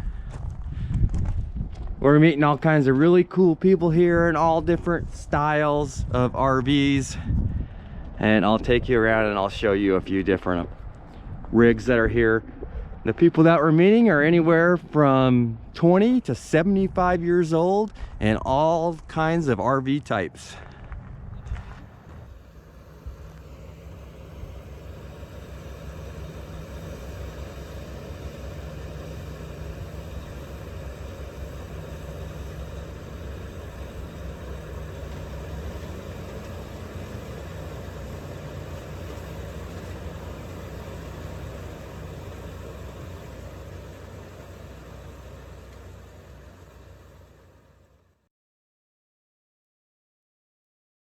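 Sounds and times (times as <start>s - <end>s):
engine idling: 20.4s - 48.2s.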